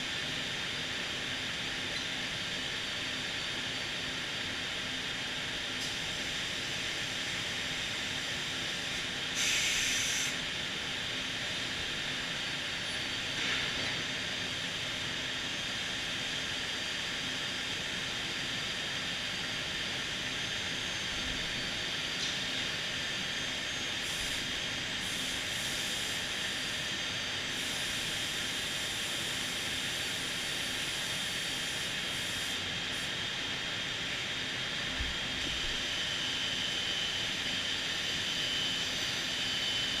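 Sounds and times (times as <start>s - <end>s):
machine hiss: 8.7s - 10.5s, 22.2s - 33.2s.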